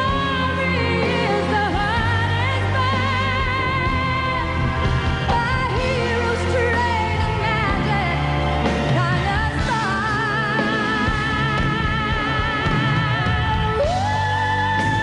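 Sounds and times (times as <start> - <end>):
live band accompaniment: 0.0 - 15.0
woman singing with vibrato: 0.0 - 15.0.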